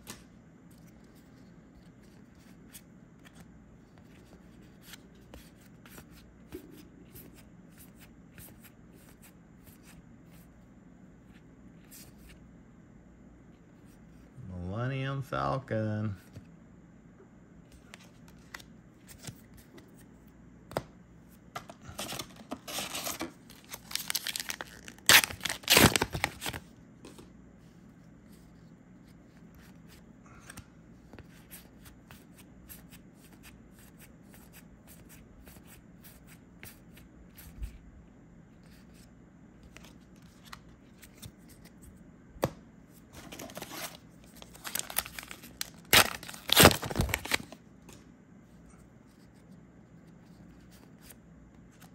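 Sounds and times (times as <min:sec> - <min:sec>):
card packs tearing and crinkling: 0:21.8 - 0:26.6, 0:43.2 - 0:47.6.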